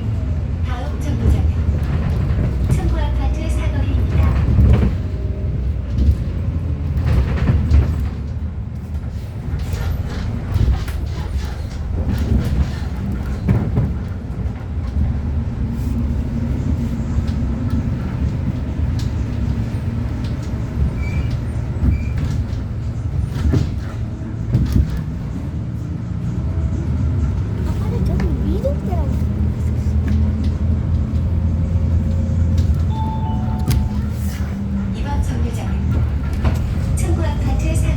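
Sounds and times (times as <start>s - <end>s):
bus engine and road rumble: 0.0s - 37.9s
short faint beeps: 32.9s - 34.0s.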